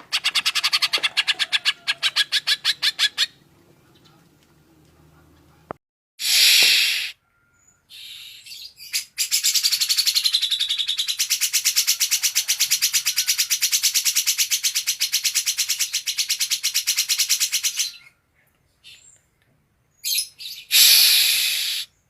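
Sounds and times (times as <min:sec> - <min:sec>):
bird singing harsh bursts: 0:06.2 - 0:12.0, 0:20.0 - 0:22.0.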